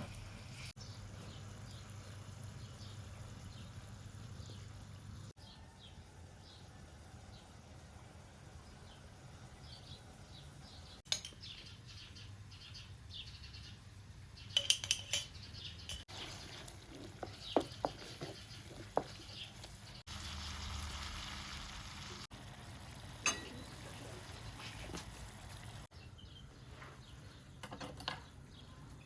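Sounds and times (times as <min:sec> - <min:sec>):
birds chirping: 0:08.6 - 0:29.0
kitchenware clinking: 0:11.1 - 0:11.6, 0:14.5 - 0:16.3, 0:23.2 - 0:24.0, 0:27.6 - 0:28.4.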